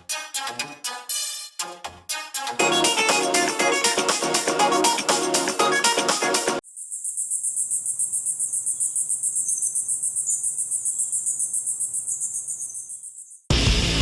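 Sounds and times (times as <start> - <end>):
high pulsing chirring phone tone: 2.6 - 6.6.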